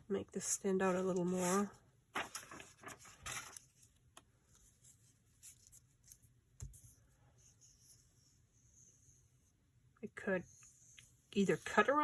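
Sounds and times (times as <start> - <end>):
paper rustling: 1.1 - 6.8.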